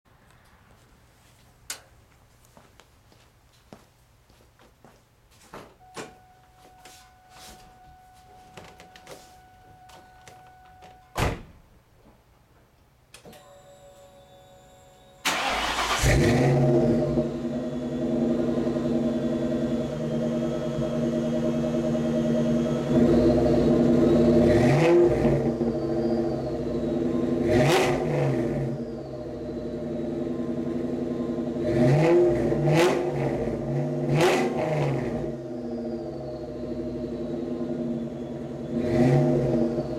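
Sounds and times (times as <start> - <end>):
car engine cranking and starting: 15.2 - 39.9
car engine idling and revving: 15.3 - 39.9.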